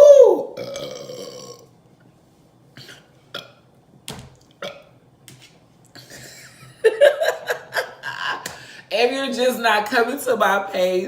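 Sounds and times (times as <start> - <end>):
woman burping: 0.5 - 1.7, 2.8 - 3.6, 4.6 - 4.9.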